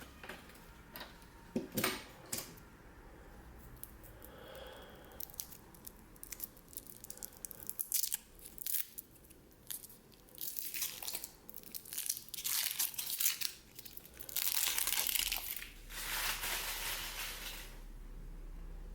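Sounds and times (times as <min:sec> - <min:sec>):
foil wrapping crinkling: 0:05.2 - 0:17.8.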